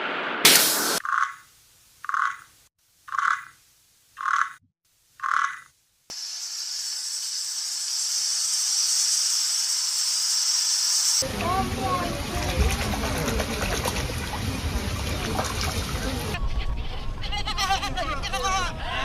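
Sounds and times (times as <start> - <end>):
steady high hiss: 6.1 - 11.2.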